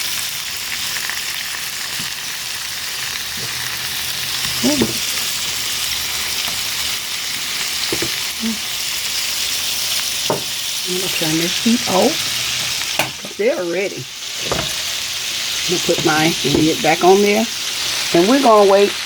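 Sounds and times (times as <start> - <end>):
potatoes sizzling in oil: 0.0 - 19.0
spatula turning potatoes: 0.8 - 19.0.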